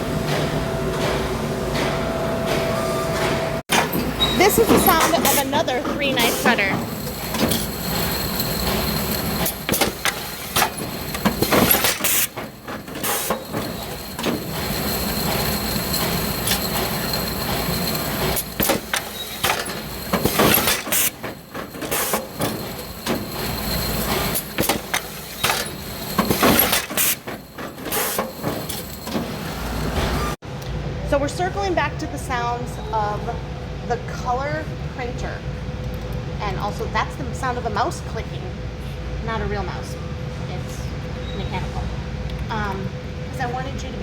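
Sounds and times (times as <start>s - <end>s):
machine clunking and hissing: 0.0s - 30.4s.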